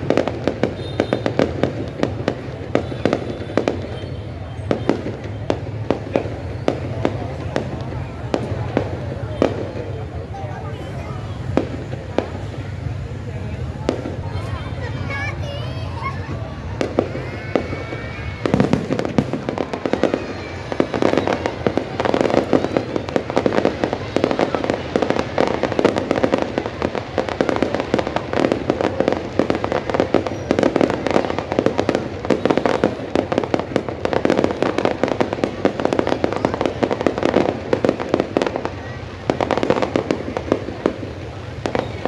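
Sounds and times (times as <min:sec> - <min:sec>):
fireworks bangs and crackles: 0:00.0 - 0:42.0.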